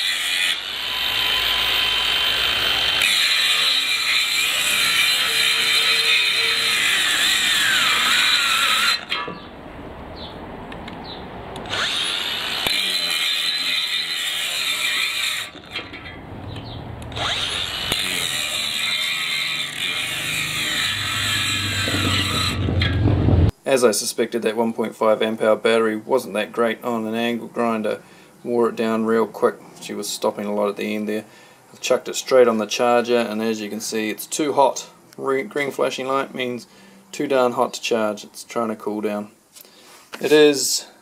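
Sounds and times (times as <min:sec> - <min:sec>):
angle grinder cutting: 0:00.0 - 0:09.4, 0:11.6 - 0:23.5.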